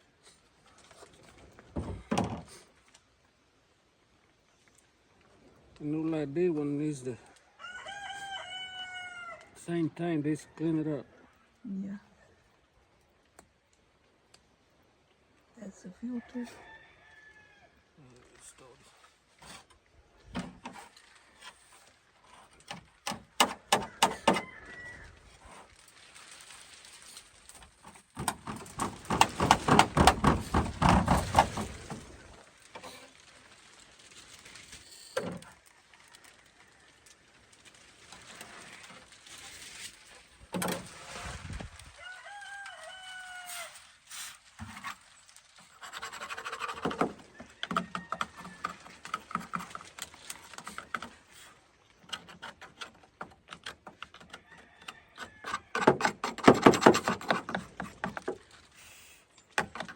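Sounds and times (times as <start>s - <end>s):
tools clattering and rubbing: 45.6s - 51.1s.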